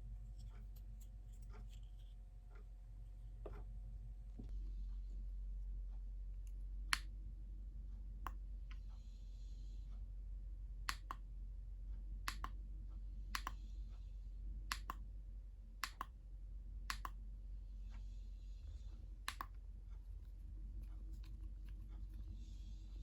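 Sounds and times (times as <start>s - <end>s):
low steady hum: 0.0s - 23.0s
soft handling rustle: 19.8s - 23.0s.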